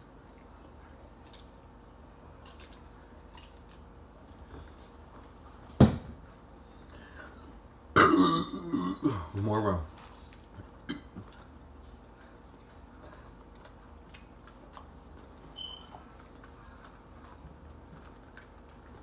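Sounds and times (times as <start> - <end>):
person chewing: 9.9 - 19.0.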